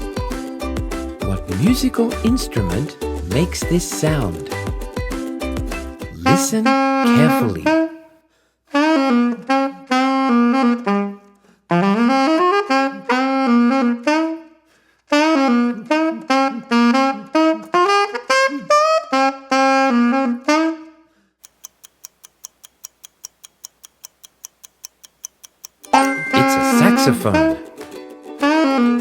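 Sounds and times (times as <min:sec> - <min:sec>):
saxophone jazzy melody: 0:01.2 - 0:08.0, 0:08.7 - 0:21.0, 0:26.0 - 0:27.8, 0:28.4 - 0:29.0
clock-like ticking: 0:21.4 - 0:26.0.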